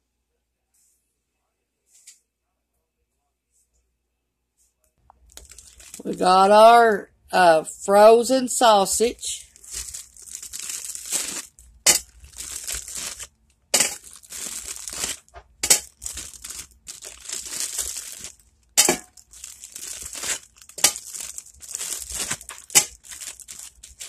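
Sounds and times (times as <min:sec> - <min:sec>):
plastic packaging crinkling: 0:05.2 - 0:06.2, 0:09.4 - 0:24.0.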